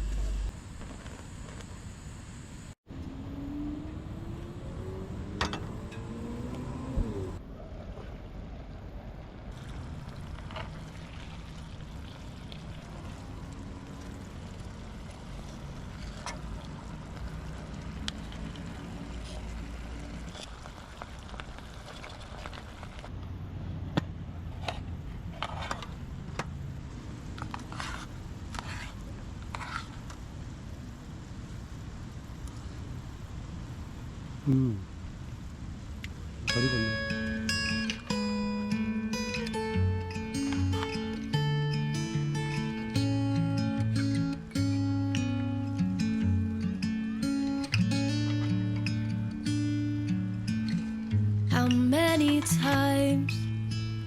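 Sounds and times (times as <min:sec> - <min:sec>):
vehicle engine rumbling: 0:00.0 - 0:07.8.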